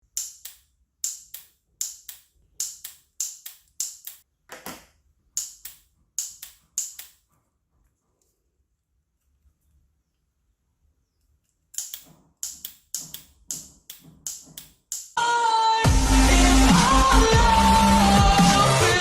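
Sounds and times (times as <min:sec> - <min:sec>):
spot welder snaps: 0:00.0 - 0:04.2, 0:11.8 - 0:15.2.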